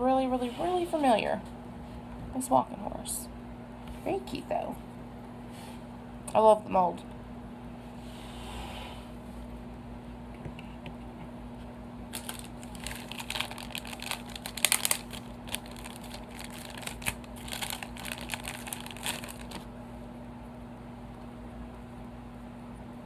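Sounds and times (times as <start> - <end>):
plastic packaging crinkling: 12.1 - 19.7.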